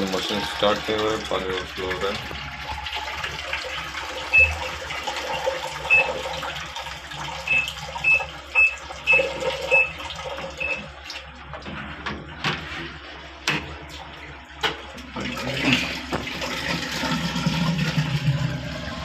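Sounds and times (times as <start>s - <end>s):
water running in washing machine: 0.0s - 19.0s
short high beeps: 4.4s - 4.7s, 5.3s - 6.1s, 7.5s - 9.9s.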